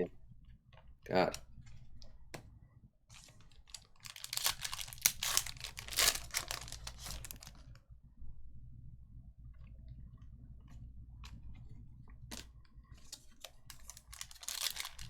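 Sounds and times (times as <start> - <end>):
foil wrapper tearing and crinkling: 3.1 - 7.8, 13.0 - 15.0.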